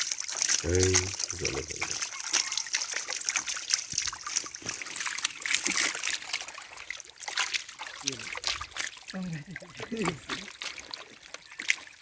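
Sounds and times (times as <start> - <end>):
water splashing and sloshing: 0.0 - 12.0.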